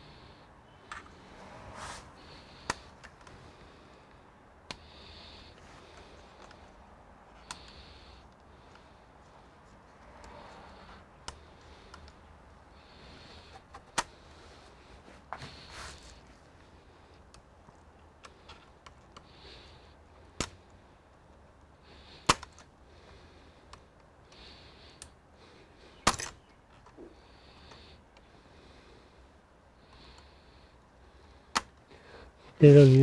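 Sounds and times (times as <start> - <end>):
light rustling: 1.0 - 3.6.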